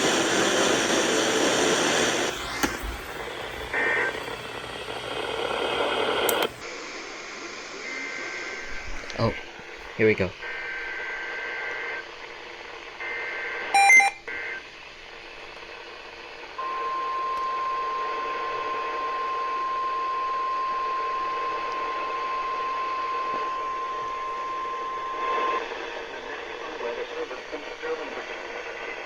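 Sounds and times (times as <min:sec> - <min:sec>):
steady alarm tone: 0:00.0 - 0:06.1, 0:13.8 - 0:14.2
loud beep: 0:13.8 - 0:14.2.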